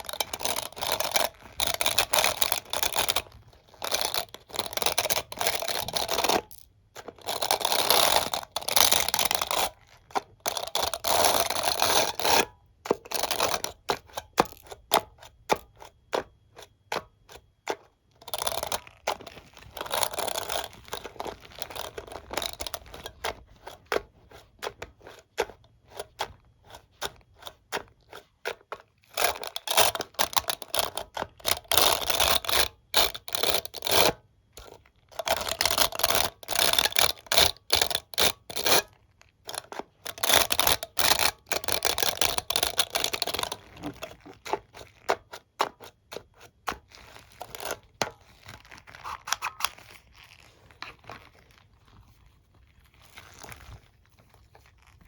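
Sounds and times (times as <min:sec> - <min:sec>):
brush bristles scraping: 0:42.8 - 0:45.1.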